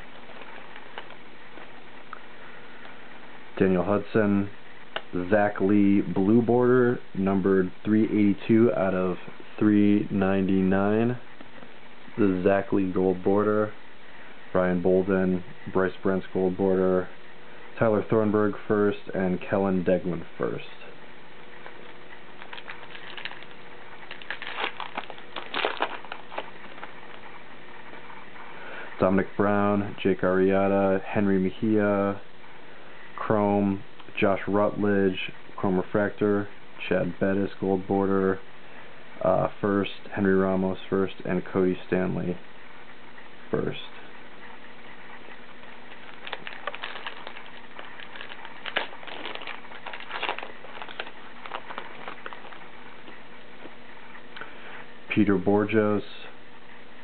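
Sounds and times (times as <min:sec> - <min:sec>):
faint room hiss: 0:00.0 - 0:57.0
wrapper and cards crinkling: 0:21.7 - 0:27.3, 0:45.6 - 0:53.3.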